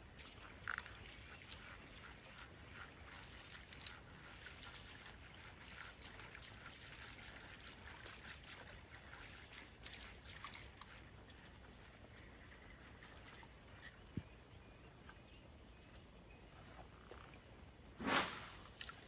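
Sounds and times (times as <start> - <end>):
faint outdoor hiss: 0.0 - 19.0.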